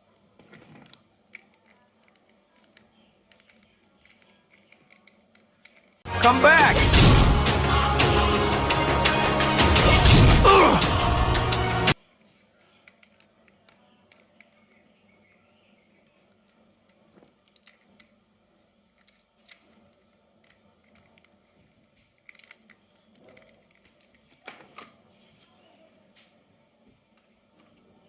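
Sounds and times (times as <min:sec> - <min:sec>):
faint small clicks and taps: 0:00.4 - 0:06.0.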